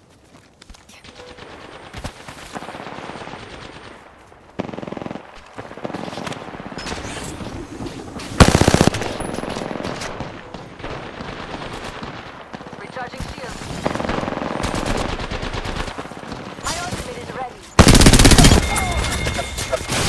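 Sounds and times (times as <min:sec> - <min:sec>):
automatic fire burst: 0:08.4 - 0:09.7, 0:17.8 - 0:18.9
video game gunfire: 0:08.4 - 0:20.0.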